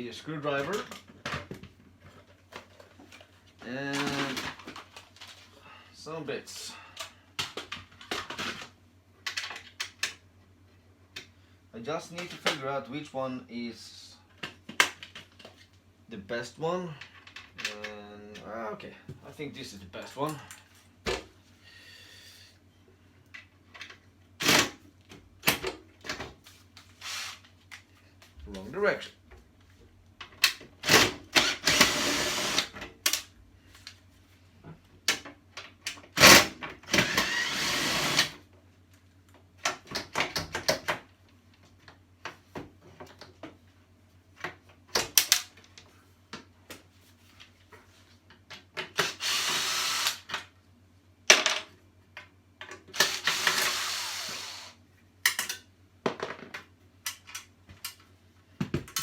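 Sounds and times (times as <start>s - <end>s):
clicks and knocks of parts: 6.9s - 10.2s, 44.4s - 49.1s, 55.2s - 59.0s
power screwdriver running: 30.8s - 32.7s, 36.2s - 38.4s, 49.0s - 50.3s, 53.0s - 54.8s.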